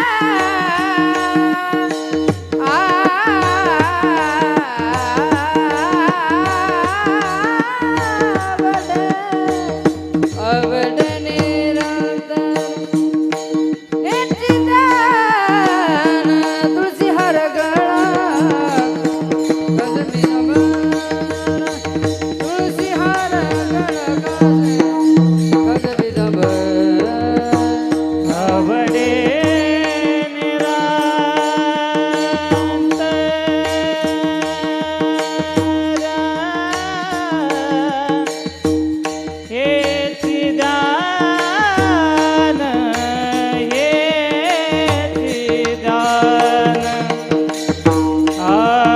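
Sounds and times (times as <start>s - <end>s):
man singing: 0.0s - 48.9s
hand drum strokes: 41.8s - 48.9s.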